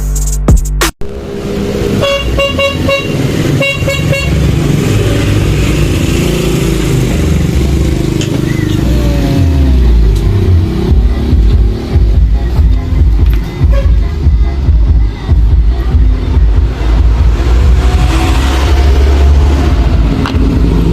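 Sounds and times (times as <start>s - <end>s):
motorcycle engine rumble: 1.0s - 20.9s.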